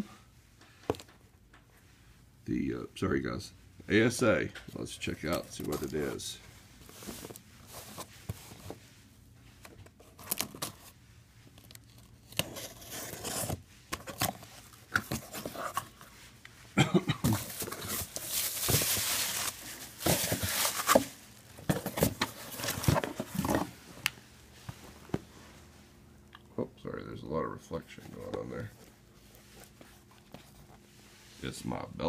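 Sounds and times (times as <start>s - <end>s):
packaging tearing and rustling: 10.0s - 10.9s, 17.4s - 21.2s.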